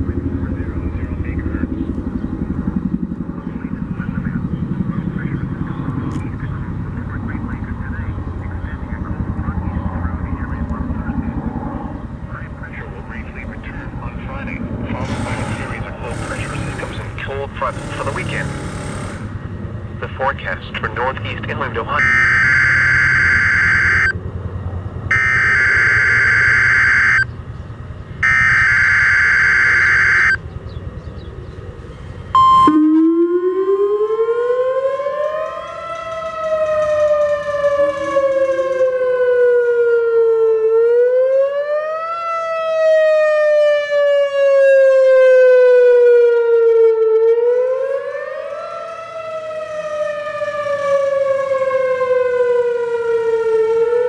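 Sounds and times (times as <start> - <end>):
warning siren wailing: 14.6 - 19.4, 20.0 - 27.5, 28.1 - 30.5, 32.3 - 54.0
high alert tone: 21.9 - 24.1, 25.1 - 27.2, 28.2 - 30.4, 32.4 - 33.5
buzzing data tones: 22.0 - 24.1, 25.1 - 27.3, 28.2 - 30.4.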